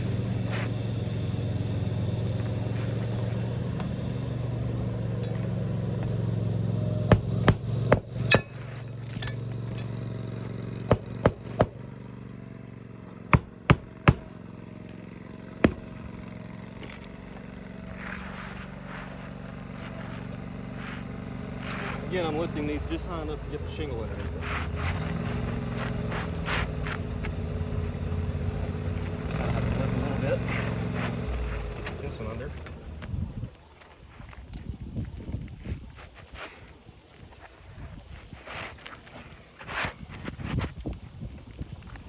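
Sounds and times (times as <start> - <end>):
low engine hum: 0.0 - 36.0
hammer driving nails: 7.1 - 10.0, 10.8 - 11.9, 13.3 - 14.4, 15.6 - 16.0.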